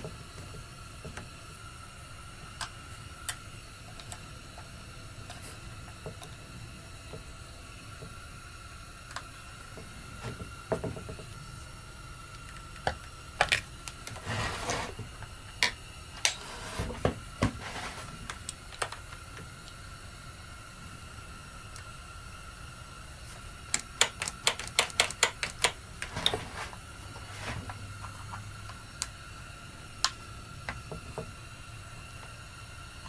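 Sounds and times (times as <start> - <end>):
rubbing scrape: 14.2 - 15.2, 16.4 - 18.3, 26.0 - 28.2
tools clicking and knocking: 23.7 - 26.5.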